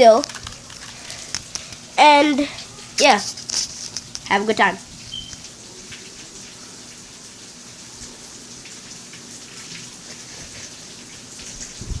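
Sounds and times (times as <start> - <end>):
steady rain: 0.0 - 12.0.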